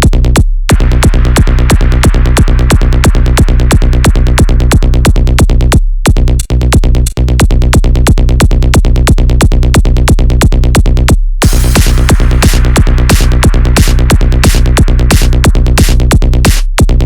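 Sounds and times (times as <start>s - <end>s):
electronic dance music: 0.7s - 5.2s, 11.4s - 16.7s.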